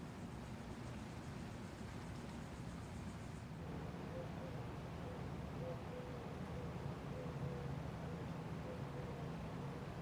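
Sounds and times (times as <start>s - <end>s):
airy hiss of fan: 0.0s - 4.0s.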